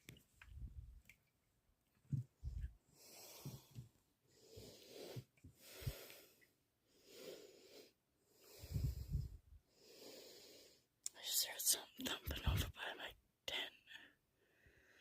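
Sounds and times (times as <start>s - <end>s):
person breathing heavily: 3.0s - 10.9s.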